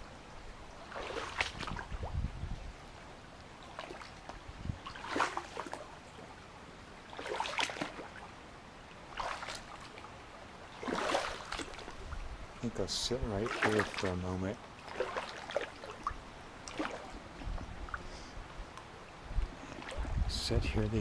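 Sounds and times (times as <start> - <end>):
stream water rushing: 0.0 - 21.0
footsteps splashing in water: 0.8 - 2.1, 3.6 - 5.9, 7.1 - 8.2, 9.1 - 10.1, 10.8 - 12.1, 13.4 - 14.2, 14.8 - 17.5, 19.7 - 20.1.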